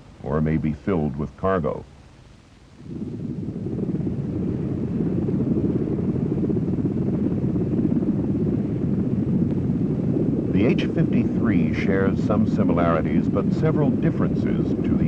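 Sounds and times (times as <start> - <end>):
helicopter rotor and engine: 2.8 - 15.0.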